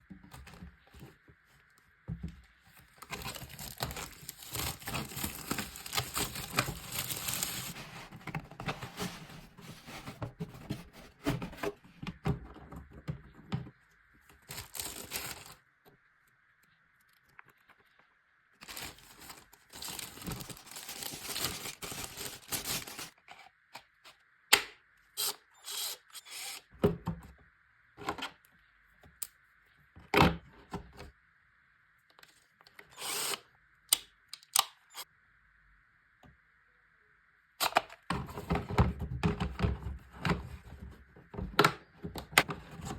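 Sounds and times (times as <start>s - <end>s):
packaging rustling and tearing: 2.9s - 11.7s, 14.4s - 15.6s, 18.6s - 23.2s.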